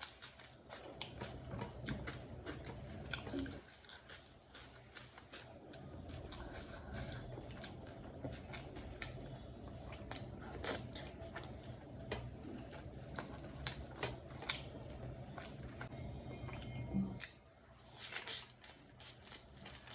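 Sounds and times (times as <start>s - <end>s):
close-miked chewing: 0.0s - 19.9s.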